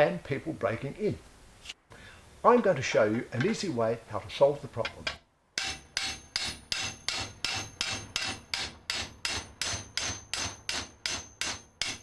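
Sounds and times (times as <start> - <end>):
hammering on sheet metal: 5.6 - 12.0.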